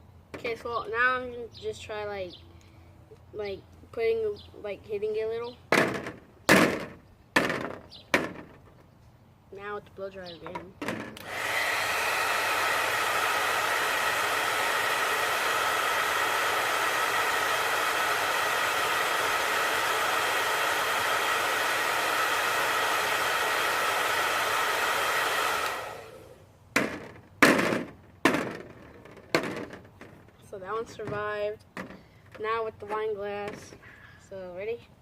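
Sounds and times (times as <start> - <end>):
blow dryer running: 10.8 - 29.8
short sharp knocks: 26.8 - 30.2.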